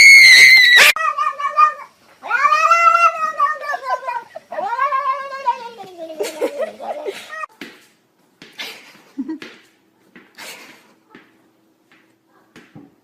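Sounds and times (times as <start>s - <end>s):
cat yowling: 0.0s - 7.5s
cat meowing: 0.8s - 5.9s.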